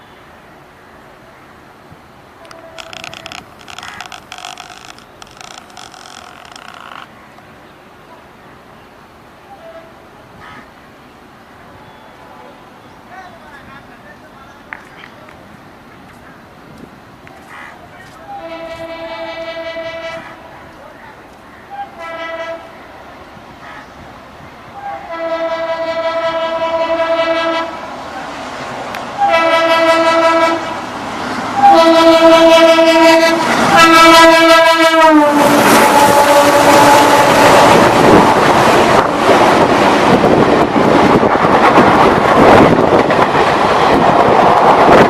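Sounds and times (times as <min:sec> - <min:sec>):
moving train noise: 0:00.0 - 0:45.0
locomotive horn blasts: 0:18.2 - 0:20.4, 0:21.7 - 0:22.7, 0:24.8 - 0:27.8, 0:29.2 - 0:30.7, 0:31.6 - 0:37.9
wind buffeting microphone: 0:33.3 - 0:45.0.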